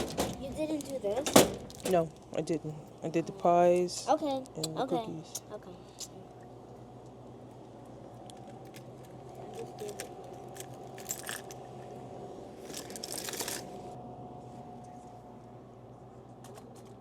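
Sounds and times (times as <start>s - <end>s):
faint steady hum: 0.0s - 17.0s
plastic wrappers crinkling: 8.3s - 11.6s, 12.6s - 13.9s.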